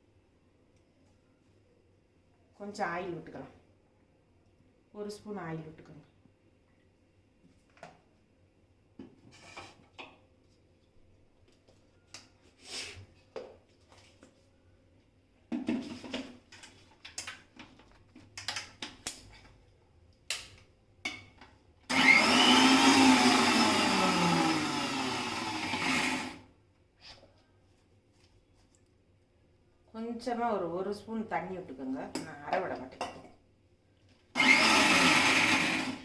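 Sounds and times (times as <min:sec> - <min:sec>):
electric mixer grinder running: 0:21.9 - 0:26.4, 0:34.4 - 0:36.0.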